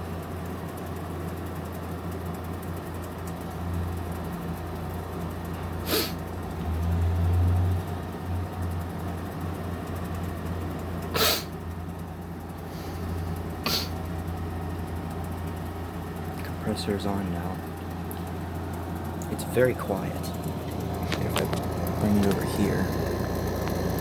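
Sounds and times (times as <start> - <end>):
window air conditioner humming: 0.0 - 24.0.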